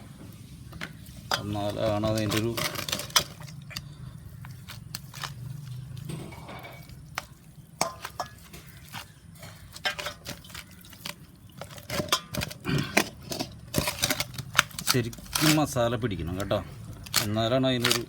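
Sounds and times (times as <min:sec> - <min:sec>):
hands packing paste into chicken: 0:00.8 - 0:06.1, 0:06.8 - 0:18.0
dish and utensils clinking: 0:01.3 - 0:04.0, 0:05.8 - 0:10.7, 0:11.6 - 0:15.6.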